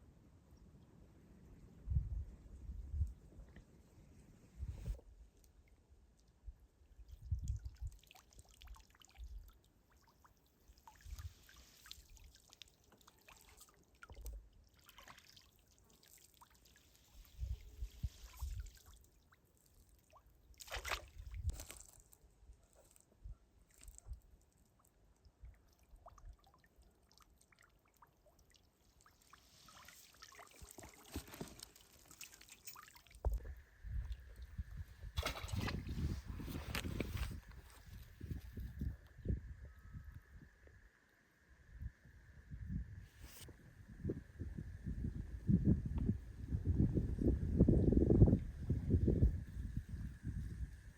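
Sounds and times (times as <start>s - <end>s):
water trickling and splashing: 7.0s - 22.2s, 23.7s - 38.9s.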